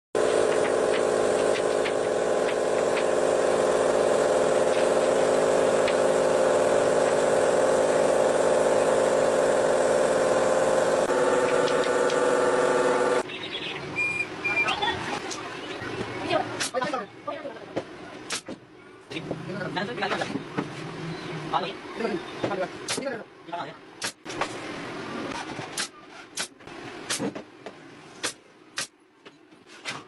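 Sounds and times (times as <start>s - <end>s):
power tool motor humming: 0.2s - 13.2s.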